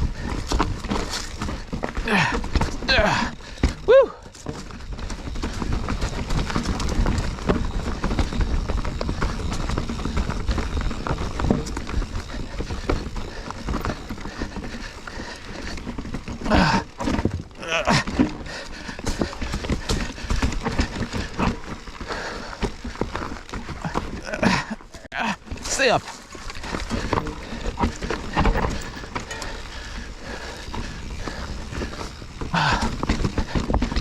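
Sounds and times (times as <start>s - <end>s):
mountain bike rattling over rocks: 0.0s - 34.0s
tyre and rushing noise: 0.0s - 34.0s.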